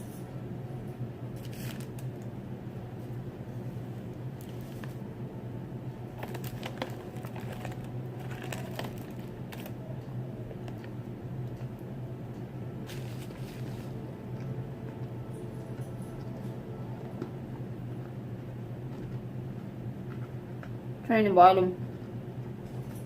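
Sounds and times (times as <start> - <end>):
steady low hum: 0.0 - 23.0
chewing crunchy cookie: 6.1 - 11.8, 12.9 - 20.9.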